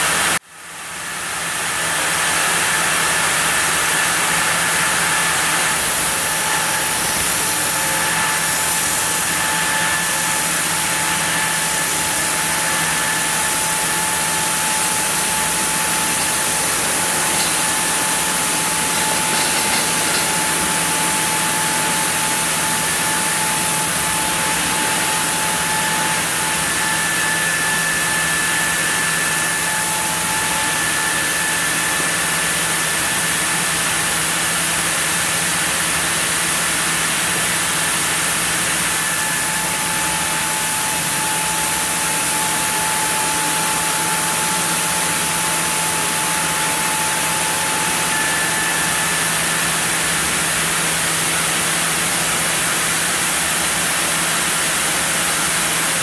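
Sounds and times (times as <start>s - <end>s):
sawmill saw cutting log: 2.5s - 33.4s.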